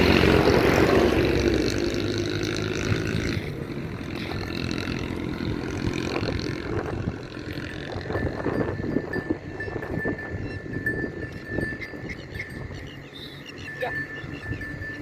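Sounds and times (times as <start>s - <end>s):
cattle grazing: 0.0s - 15.0s
cowbell clanking: 0.0s - 15.0s.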